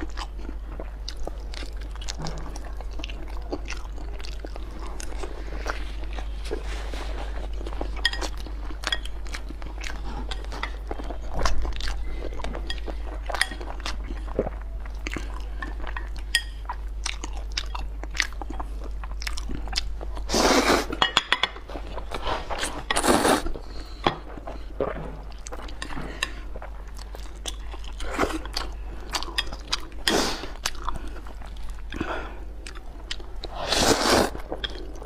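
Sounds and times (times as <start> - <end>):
person chewing and biting food: 0.0 - 6.6, 7.4 - 21.0, 21.6 - 35.0
steady low hum: 0.0 - 35.0
loud slurping noises: 33.6 - 34.4.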